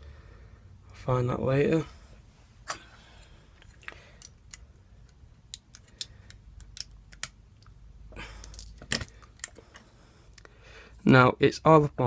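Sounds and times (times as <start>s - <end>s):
padlock metallic clicks and taps: 4.2s - 7.8s.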